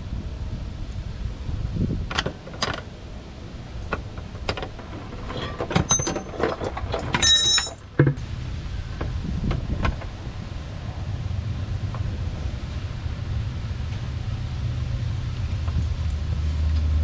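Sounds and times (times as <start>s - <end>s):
wrenches clicking and clinking: 4.4s - 8.2s.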